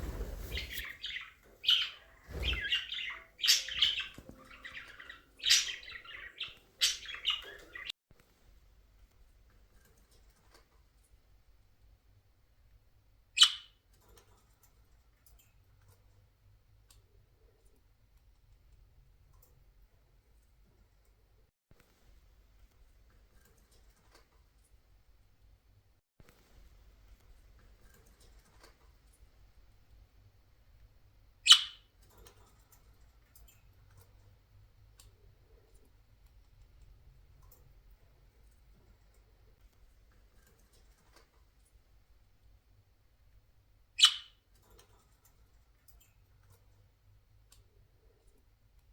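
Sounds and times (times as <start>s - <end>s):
faint clicks and scratches: 7.2s - 11.4s, 13.9s - 25.5s, 26.2s - 29.8s, 32.0s - 42.2s, 44.5s - 48.9s
faint small clicks: 32.0s - 41.8s, 44.5s - 48.9s
budgerigar harsh chirp: 44.0s - 44.3s.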